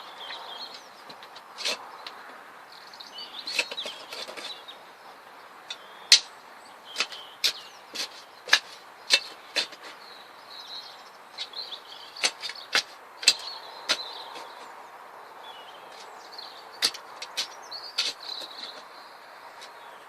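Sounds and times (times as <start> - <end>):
small birds chirping: 0.0 - 20.0
garden tool scraping soil: 0.2 - 2.0, 3.4 - 4.7, 6.9 - 10.2, 11.4 - 14.7, 16.8 - 19.0.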